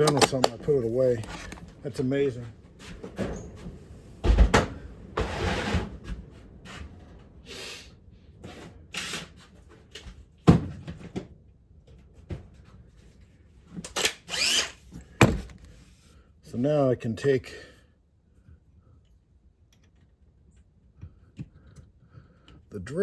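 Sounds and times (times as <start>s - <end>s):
tools knocking and clunking: 0.0s - 1.8s, 15.1s - 15.7s.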